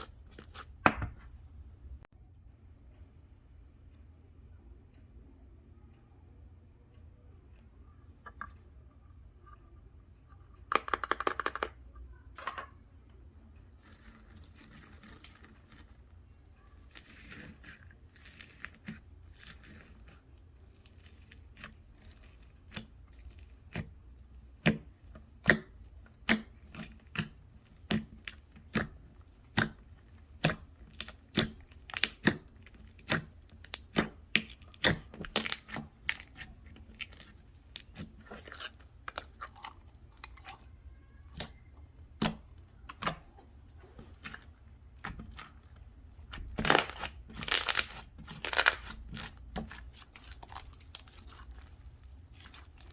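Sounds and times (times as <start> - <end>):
slime clicking and popping: 30.4 - 39.4, 46.5 - 51.6.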